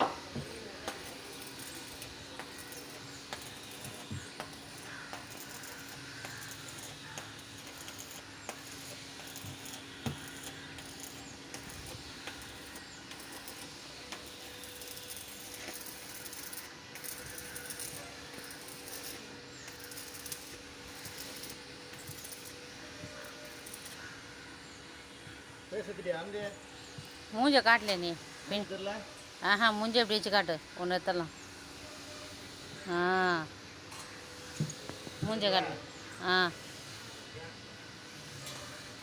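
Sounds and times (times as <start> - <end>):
electric arc crackling: 0.0 - 24.2.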